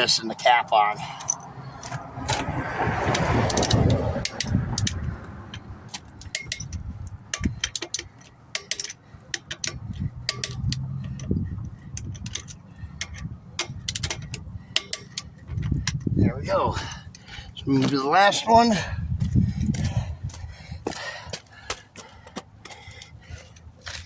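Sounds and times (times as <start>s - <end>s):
ratchet wrench clicking on lug nuts: 3.1s - 16.2s.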